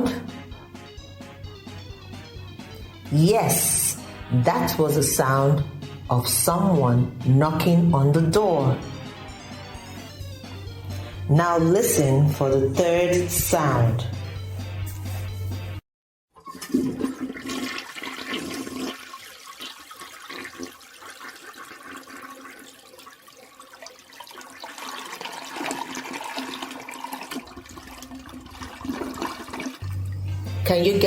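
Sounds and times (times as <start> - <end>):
toilet flushing: 16.4 - 31.0.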